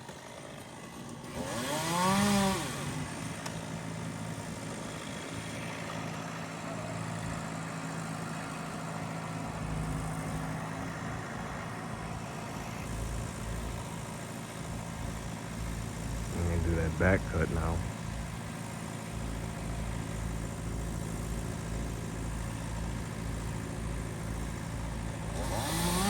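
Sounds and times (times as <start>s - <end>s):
chainsaw engine revving: 0.0s - 8.3s, 16.2s - 18.0s, 24.6s - 26.0s
engine idling: 3.4s - 26.0s.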